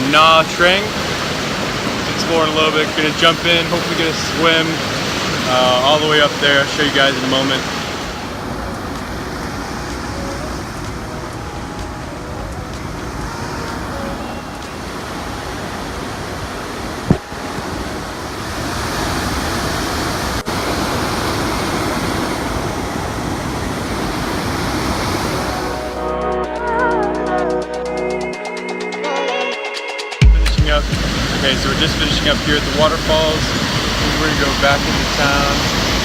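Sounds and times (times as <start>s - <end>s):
waterfall rushing: 0.0s - 26.1s, 30.2s - 36.0s.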